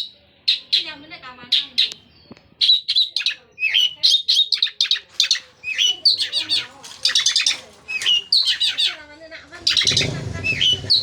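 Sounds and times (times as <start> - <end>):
bird singing rapid sharp chirps: 0.0 - 9.0, 9.6 - 11.0.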